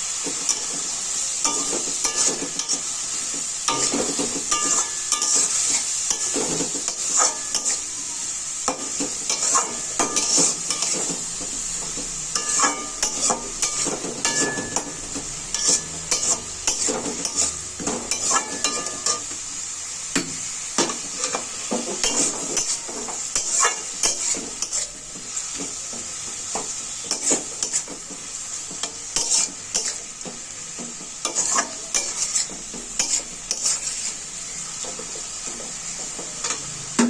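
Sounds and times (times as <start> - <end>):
onions sizzling in a pan: 0.0 - 37.0
spatula scraping a pan: 0.2 - 19.4, 20.8 - 36.7.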